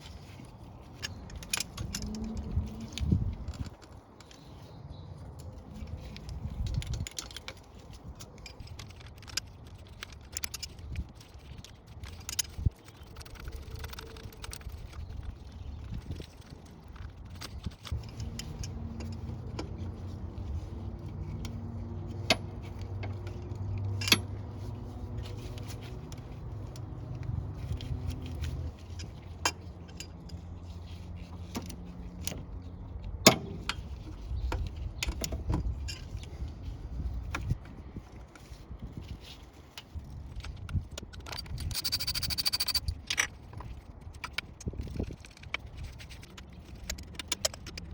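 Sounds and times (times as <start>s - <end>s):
metal tools clinking on engine parts: 0.0s - 36.9s, 39.8s - 47.9s.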